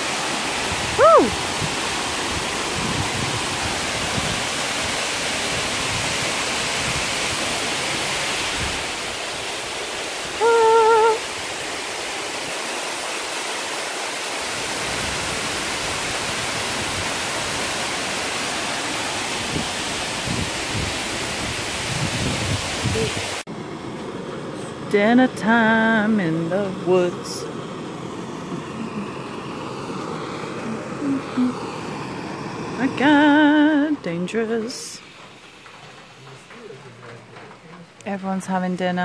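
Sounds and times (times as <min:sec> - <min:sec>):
waterfall rushing: 0:00.0 - 0:23.5, 0:28.3 - 0:37.6
short wavering pitched note: 0:30.6 - 0:31.7.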